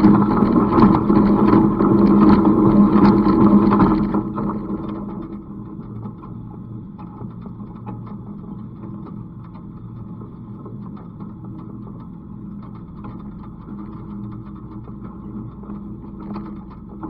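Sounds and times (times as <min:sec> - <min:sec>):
tractor engine drone: 0:00.0 - 0:05.2.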